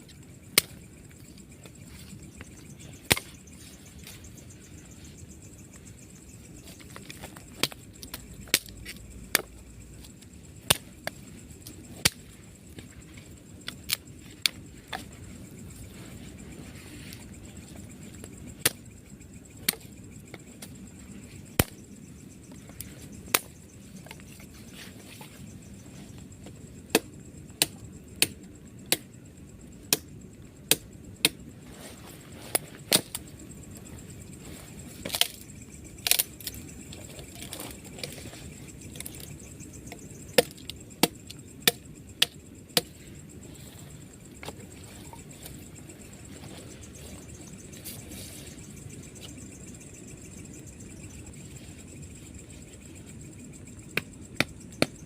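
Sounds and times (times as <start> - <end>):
steady background hiss: 0.0 - 55.0
firewood chopping: 21.6 - 21.8.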